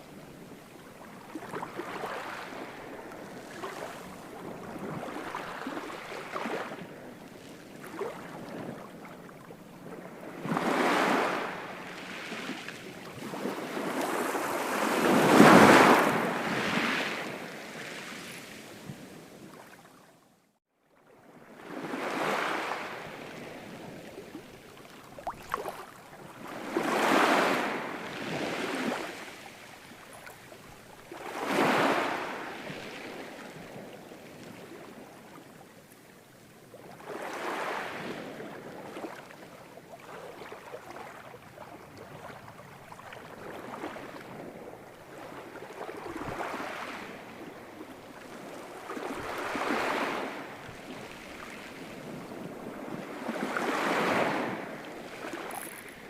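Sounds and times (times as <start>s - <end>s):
ocean waves breaking: 1.0s - 19.4s, 21.5s - 35.0s, 43.4s - 56.0s.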